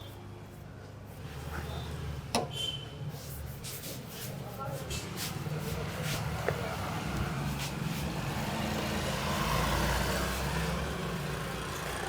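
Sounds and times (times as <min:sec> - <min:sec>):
vehicle engine rumble passing: 0:05.8 - 0:12.0.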